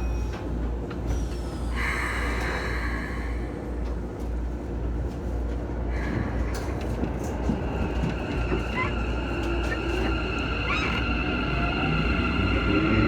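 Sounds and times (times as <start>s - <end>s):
train running rumble: 0.0s - 13.0s
train motors whining: 6.2s - 13.0s.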